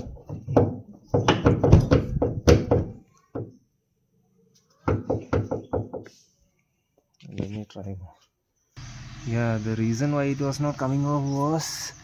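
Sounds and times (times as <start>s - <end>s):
car body part knocking: 0.2s - 3.6s, 4.9s - 6.0s.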